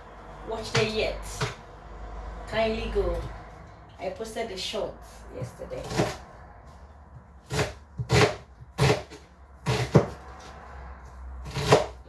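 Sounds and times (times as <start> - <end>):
knife chopping on cutting board: 5.4 - 6.2, 7.1 - 10.5, 11.4 - 12.0.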